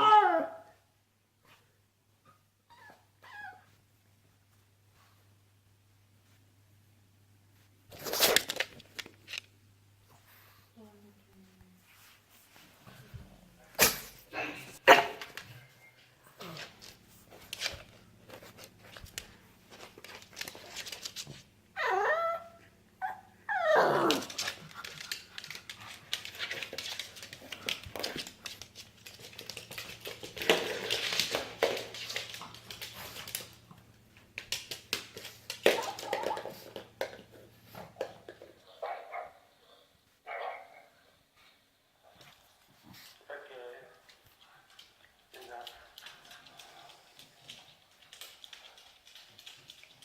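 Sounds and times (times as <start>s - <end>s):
dog whining: 21.8s - 24.4s.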